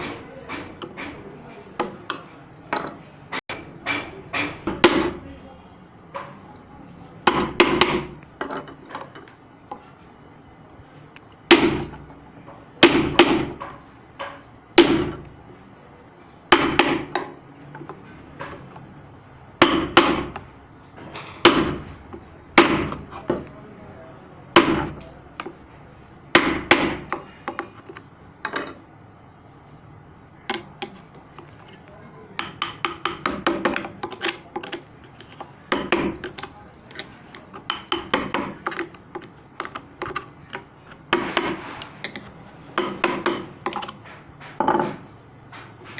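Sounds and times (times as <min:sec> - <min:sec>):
mallet striking chisel into wood: 0:03.5 - 0:05.2, 0:07.3 - 0:08.2, 0:11.5 - 0:12.1, 0:12.8 - 0:15.3, 0:16.5 - 0:17.4, 0:19.6 - 0:20.5, 0:21.4 - 0:21.9, 0:22.6 - 0:23.5, 0:24.6 - 0:25.6, 0:26.3 - 0:27.6, 0:32.4 - 0:34.8, 0:35.7 - 0:44.0.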